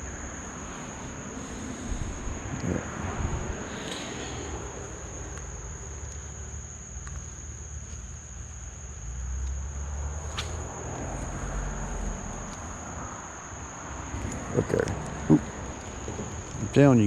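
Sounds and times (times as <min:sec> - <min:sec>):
high-pitched insect chorus: 0:00.0 - 0:17.0
low rumble: 0:01.5 - 0:05.9.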